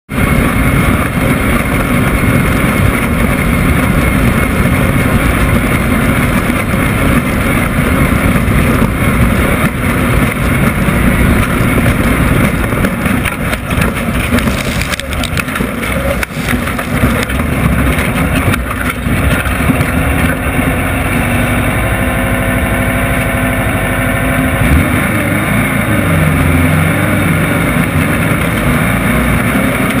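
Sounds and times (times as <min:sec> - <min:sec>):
race vehicle engine running hard: 0:00.1 - 0:30.0
knocks and rattles: 0:00.6 - 0:20.9.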